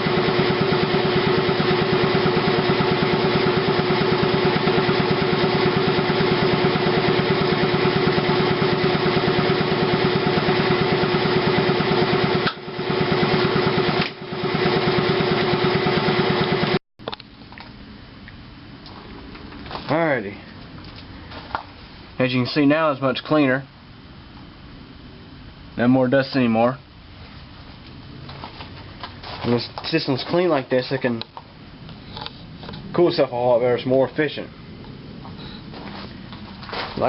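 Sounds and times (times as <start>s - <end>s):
electric motor humming: 0.0s - 16.8s.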